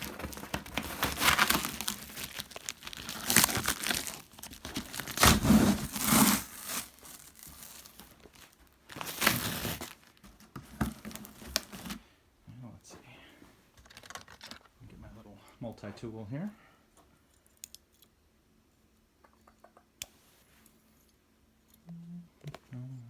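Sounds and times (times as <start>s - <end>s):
cardboard box crinkling and tearing: 0.0s - 12.0s.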